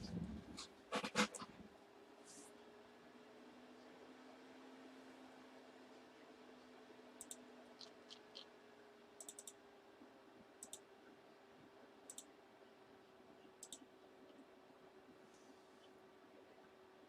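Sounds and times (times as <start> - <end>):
low electrical hum: 0.0 - 17.0
computer mouse clicks: 7.2 - 8.5, 9.2 - 9.6, 10.6 - 10.9, 12.1 - 12.3, 13.6 - 13.9.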